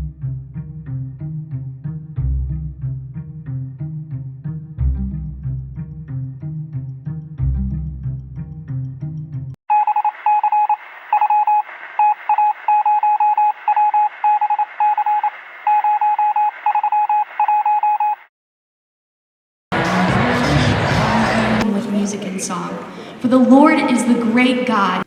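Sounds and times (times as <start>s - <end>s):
music: 0.0s - 9.6s, 19.8s - 21.6s
electronic beep tone pulsing: 9.7s - 18.2s.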